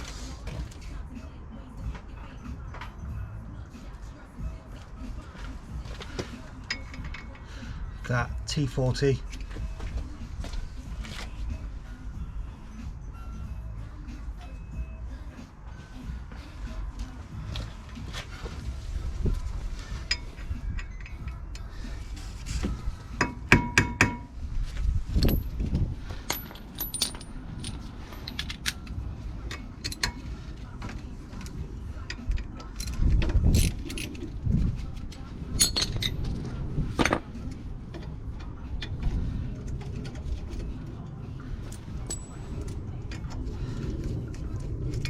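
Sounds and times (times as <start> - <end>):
metal tools clinking: 6.6 - 7.5, 25.1 - 31.5, 32.1 - 36.4, 41.6 - 43.4.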